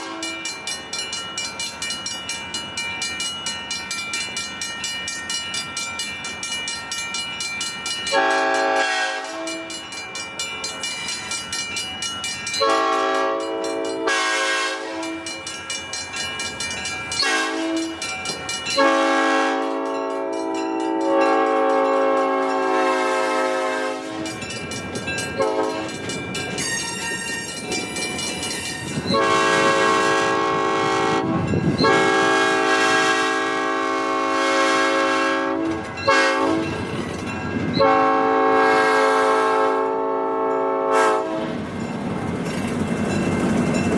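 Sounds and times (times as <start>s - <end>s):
locomotive air horn blasts: 0.0s - 0.4s, 8.1s - 9.8s, 12.6s - 15.4s, 17.2s - 18.0s, 18.8s - 24.4s, 25.4s - 25.9s, 29.1s - 36.8s, 37.8s - 41.6s.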